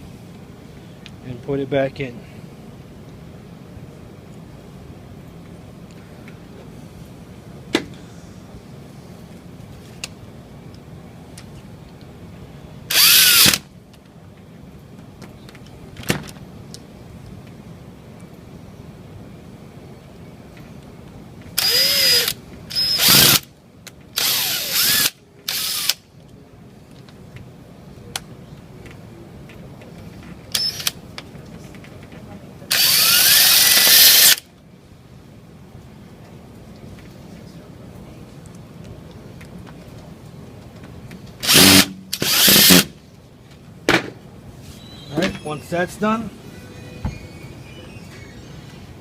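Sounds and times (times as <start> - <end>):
cordless drill whine: 12.9 - 13.6, 21.6 - 23.4, 24.2 - 26.0, 30.6 - 30.9, 32.7 - 34.4, 41.4 - 42.9.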